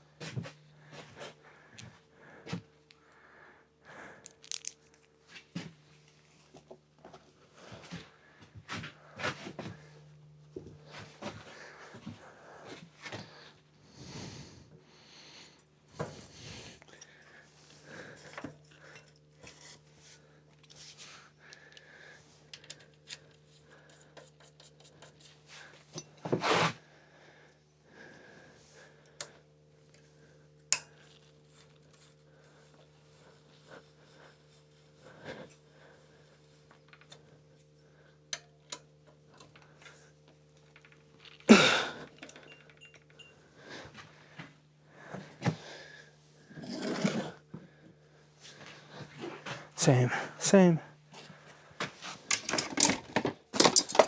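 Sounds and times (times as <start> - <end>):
tools scraping and clicking: 4.2 - 5.1, 52.2 - 54.0.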